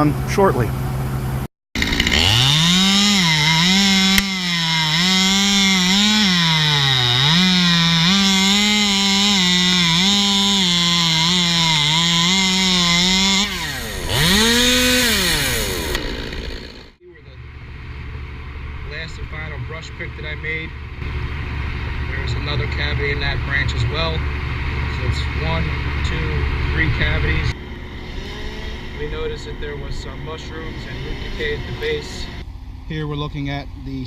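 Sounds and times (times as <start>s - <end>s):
chainsaw cutting wood: 1.8s - 17.0s, 24.9s - 32.4s.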